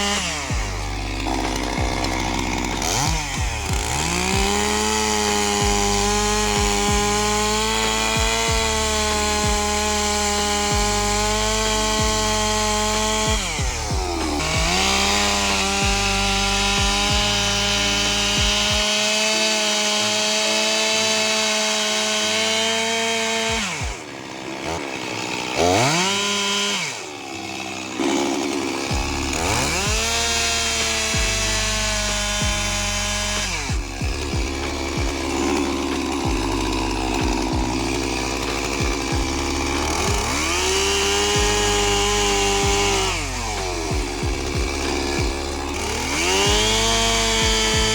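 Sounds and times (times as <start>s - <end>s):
background music with deep bass: 0.0s - 19.0s, 28.7s - 47.9s
chainsaw cutting wood: 0.0s - 47.9s.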